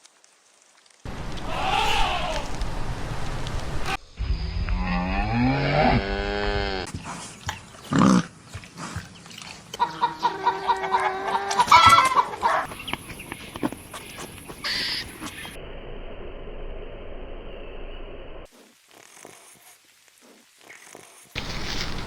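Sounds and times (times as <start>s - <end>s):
farm animal calling: 1.1s - 4.0s, 9.7s - 15.6s.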